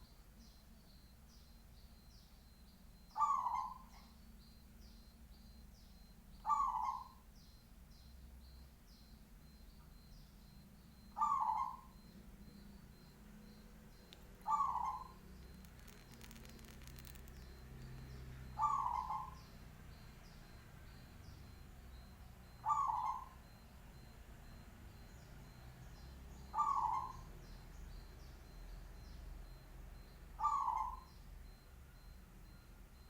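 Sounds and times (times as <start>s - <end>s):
small birds chirping: 0.0s - 33.0s
dove cooing: 2.5s - 4.1s, 6.0s - 7.2s, 9.5s - 25.6s, 26.4s - 27.7s, 30.3s - 32.6s.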